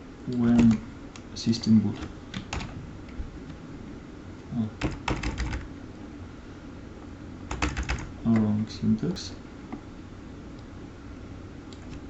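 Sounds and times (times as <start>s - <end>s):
computer keyboard typing: 0.3s - 0.8s, 2.3s - 2.8s, 4.8s - 5.7s, 7.5s - 8.5s.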